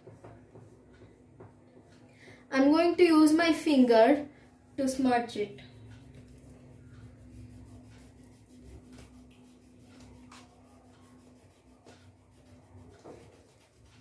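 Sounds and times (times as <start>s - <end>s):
steady low hum: 4.2s - 14.0s
fingertip rubbing pastel on paper: 5.8s - 14.0s.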